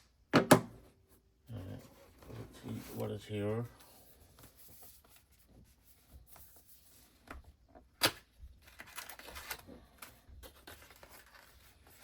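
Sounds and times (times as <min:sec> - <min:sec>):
packaging rustling: 0:08.6 - 0:12.0.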